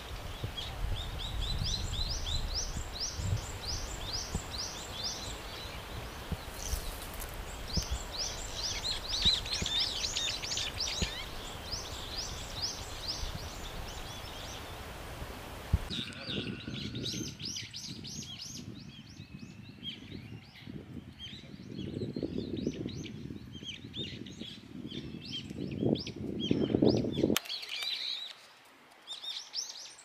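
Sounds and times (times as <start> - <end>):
bulbuls calling: 2.1 - 15.0.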